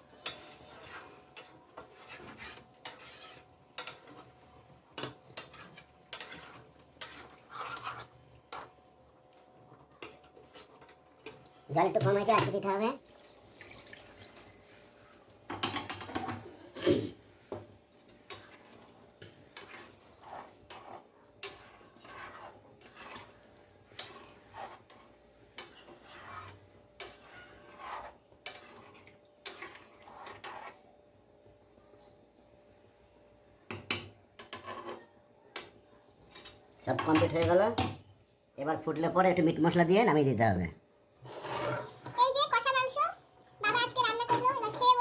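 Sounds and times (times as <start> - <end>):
spoon scraping a cooking pot: 0.0 - 8.9, 9.6 - 12.7, 17.5 - 30.9, 33.8 - 37.6, 41.2 - 42.2.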